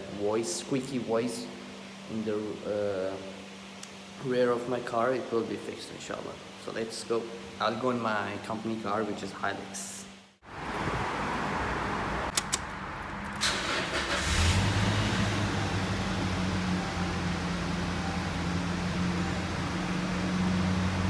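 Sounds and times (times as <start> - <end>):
sharp clicks: 12.3 - 13.4
car engine starting and idling: 12.3 - 21.0.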